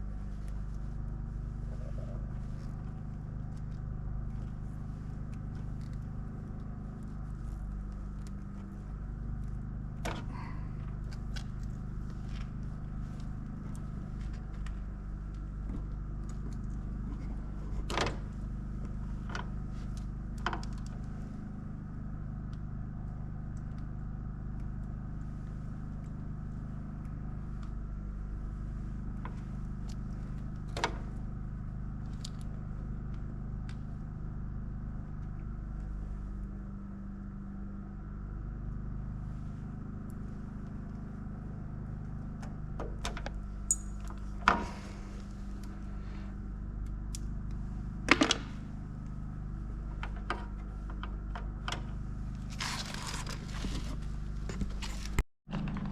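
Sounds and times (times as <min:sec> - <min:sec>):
low machine hum: 0:00.0 - 0:55.9.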